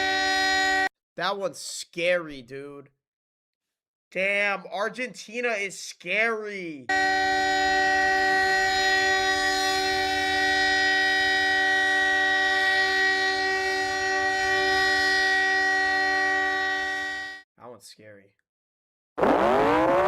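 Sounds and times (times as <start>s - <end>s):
steady emergency alarm chord: 0.0s - 0.9s, 6.9s - 17.4s.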